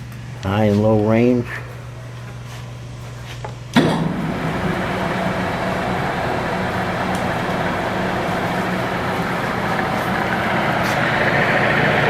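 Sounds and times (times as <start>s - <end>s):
lathe running: 1.5s - 12.0s
lathe motor hum: 1.6s - 12.0s
spindle start knock: 3.7s - 12.0s.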